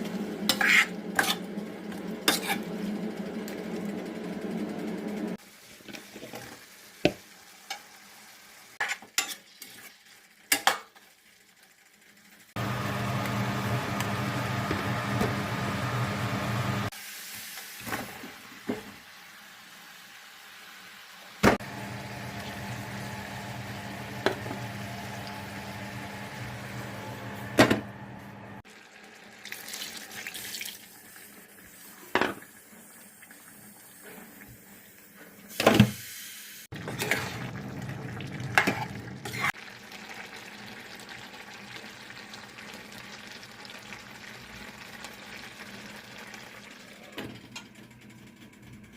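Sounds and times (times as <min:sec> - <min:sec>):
tap water running: 0:21.4 - 0:34.9, 0:36.7 - 0:47.4.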